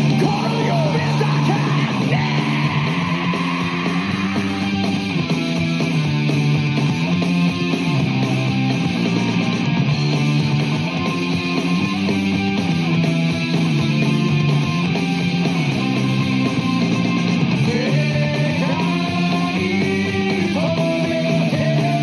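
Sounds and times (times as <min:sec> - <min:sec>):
instrumental rock music: 0:00.0 - 0:22.0.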